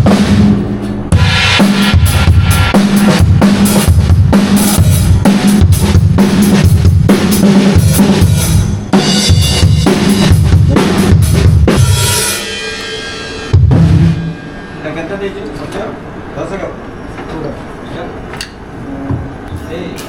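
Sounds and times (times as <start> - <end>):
bass drum: 0.0 - 12.2, 13.6 - 14.4
cymbals: 0.0 - 15.3.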